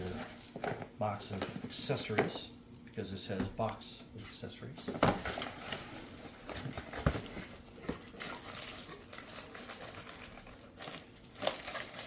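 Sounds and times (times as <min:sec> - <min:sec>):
cardboard box rustling: 0:05.0 - 0:08.9.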